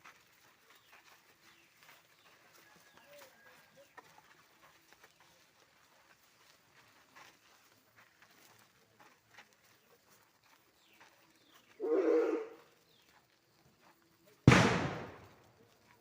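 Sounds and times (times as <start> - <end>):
sudden loud bang: 14.5 - 15.2.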